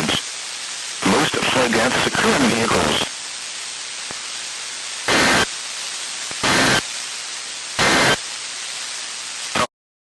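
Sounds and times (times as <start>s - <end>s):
radio static hiss: 0.0s - 9.7s
screechy two-tone data bursts: 5.1s - 5.5s, 6.4s - 6.9s, 7.8s - 8.2s.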